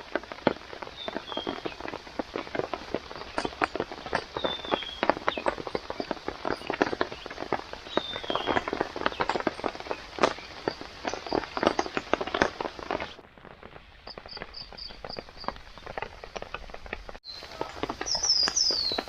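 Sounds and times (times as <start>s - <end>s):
crackling and snapping clicks: 0.0s - 19.0s
high chirps: 3.1s - 11.7s, 17.2s - 19.0s.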